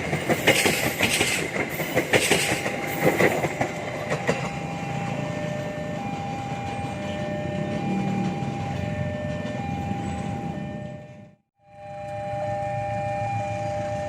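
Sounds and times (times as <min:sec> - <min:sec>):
train rumbling past: 0:00.0 - 0:14.0
thin whine: 0:11.6 - 0:14.0.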